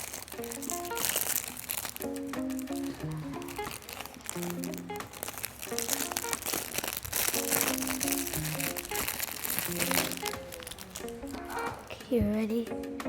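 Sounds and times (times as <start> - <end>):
plastic packaging crinkling: 0.0 - 12.1
simple melody background music: 0.0 - 13.0.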